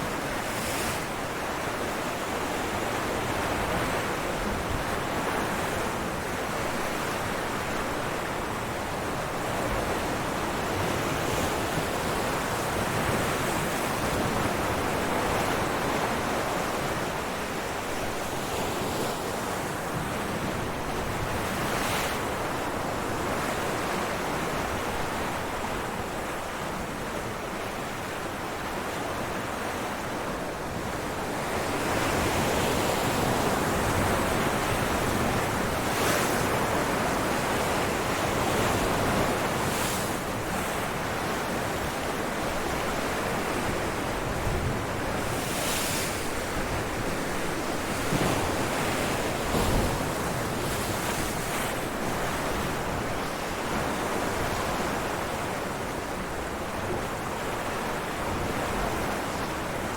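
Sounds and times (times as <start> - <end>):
ocean waves breaking on rocks: 31.4 - 59.9.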